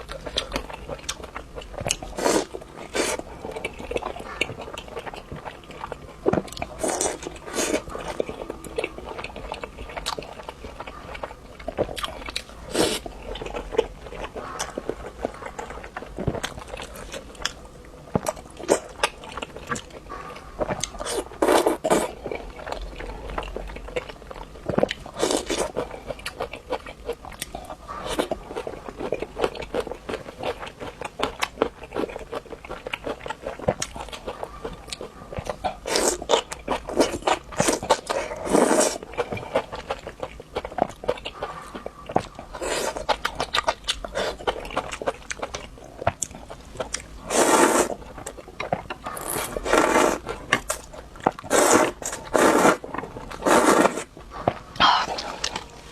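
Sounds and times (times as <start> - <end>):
person chewing and biting: 20.6 - 55.9.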